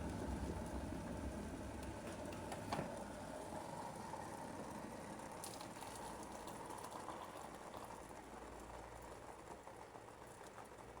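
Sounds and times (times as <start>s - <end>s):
water boiling in a kettle: 0.0s - 11.0s.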